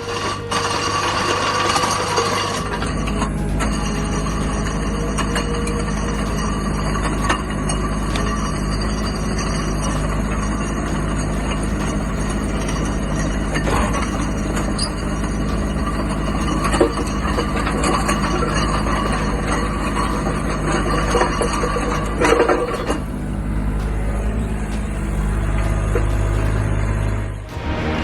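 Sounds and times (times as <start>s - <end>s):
diesel engine running: 0.0s - 27.5s.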